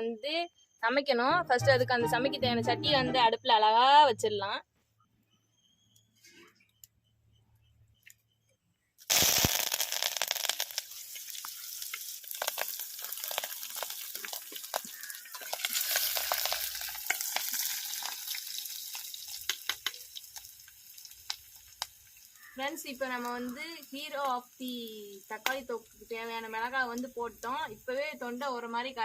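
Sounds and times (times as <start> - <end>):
food frying in hot oil: 9.0 - 28.7.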